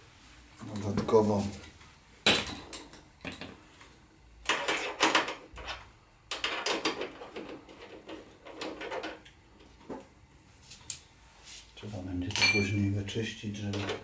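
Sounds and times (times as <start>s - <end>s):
metal tools clinking and rattling: 12.3s - 12.9s.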